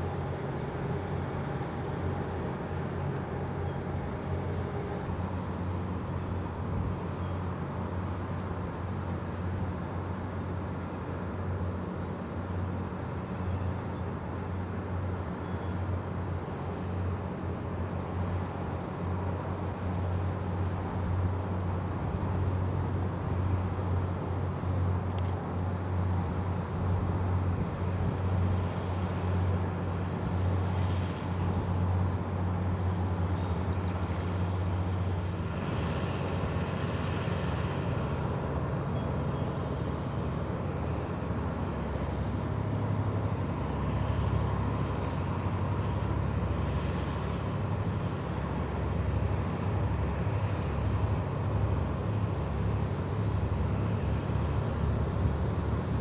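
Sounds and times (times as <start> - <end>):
diesel engine humming: 14.3 - 56.0.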